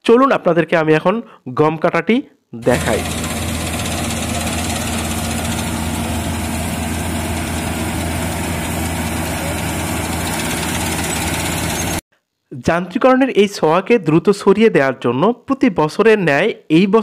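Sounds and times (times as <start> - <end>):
combine harvester engine drone: 2.6 - 12.0
mechanical machine noise: 2.6 - 12.0.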